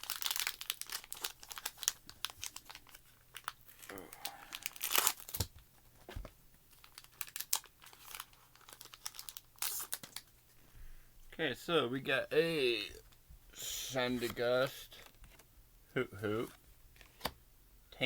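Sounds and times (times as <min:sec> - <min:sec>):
foil wrapper crinkling: 0:00.0 - 0:05.5, 0:06.7 - 0:10.4.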